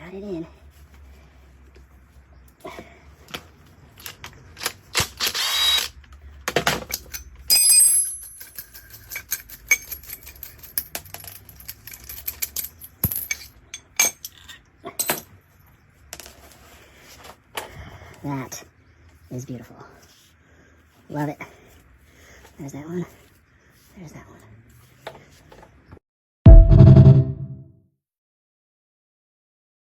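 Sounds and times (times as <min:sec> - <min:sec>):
metal tools clinking: 0:06.8 - 0:15.4.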